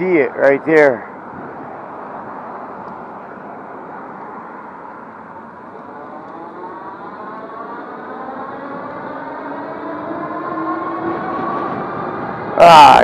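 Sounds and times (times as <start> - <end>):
wind rush and road noise: 0.0 - 13.0
electric bike motor whining: 5.9 - 12.5.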